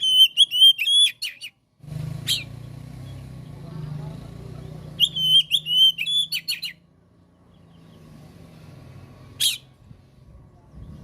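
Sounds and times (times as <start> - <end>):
bird singing whistled notes: 0.0 - 1.6, 4.9 - 6.8.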